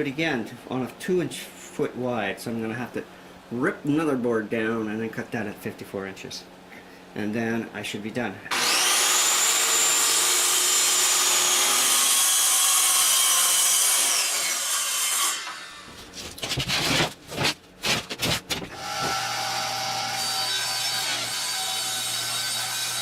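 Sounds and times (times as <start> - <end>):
circular saw cutting plywood: 8.5 - 23.0
plywood knocking and scraping: 16.0 - 19.2.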